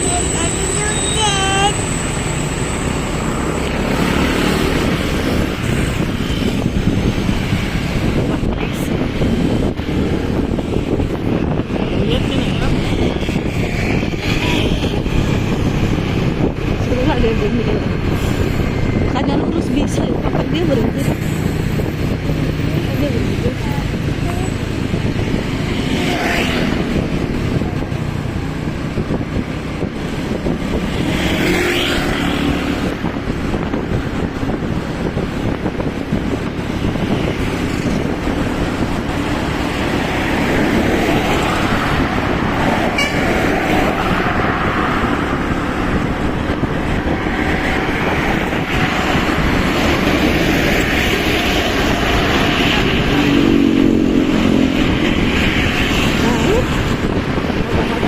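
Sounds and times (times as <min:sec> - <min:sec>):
road traffic noise: 0:00.0 - 0:58.0.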